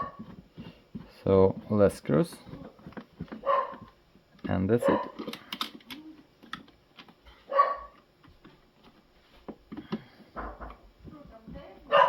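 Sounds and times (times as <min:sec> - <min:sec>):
dog barking: 0:00.0 - 0:00.2, 0:03.4 - 0:03.9, 0:04.8 - 0:05.2, 0:07.5 - 0:08.0
parts and screws clicking: 0:04.4 - 0:07.2.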